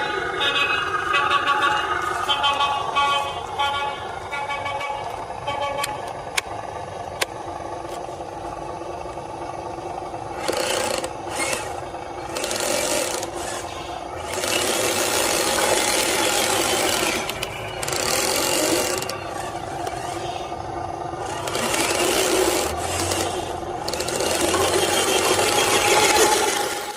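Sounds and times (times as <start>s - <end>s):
rc vehicles scraping ground: 10.4s - 20.5s, 21.2s - 26.9s.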